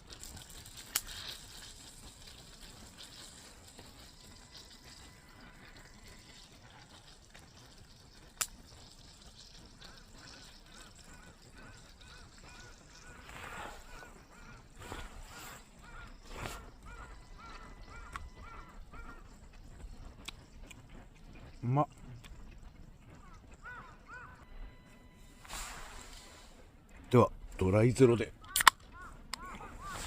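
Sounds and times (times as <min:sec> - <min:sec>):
faint bird calls: 0:09.8 - 0:20.7, 0:23.0 - 0:26.8, 0:28.3 - 0:30.0.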